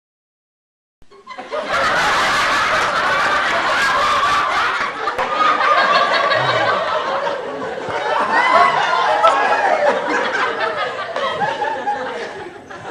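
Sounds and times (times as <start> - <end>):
studio audience laughing: 1.1 - 12.9.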